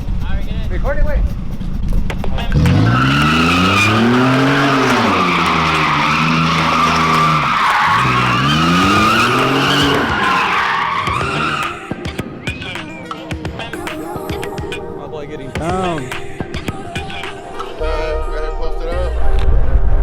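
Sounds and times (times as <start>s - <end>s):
truck engine revving: 2.2s - 11.8s
tyres squealing: 2.2s - 13.8s.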